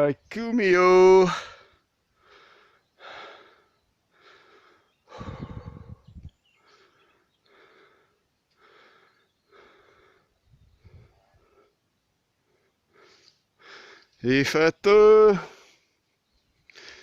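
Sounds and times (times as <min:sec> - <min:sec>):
person breathing: 0:01.4 - 0:11.8, 0:12.4 - 0:14.2, 0:16.7 - 0:17.0.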